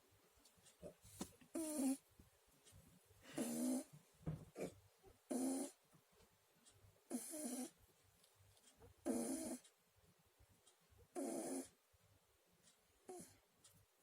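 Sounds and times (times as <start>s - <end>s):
cat snoring: 1.5s - 2.0s, 3.3s - 3.9s, 4.6s - 5.8s, 7.1s - 7.8s, 9.0s - 9.6s, 11.1s - 11.8s, 13.1s - 13.4s.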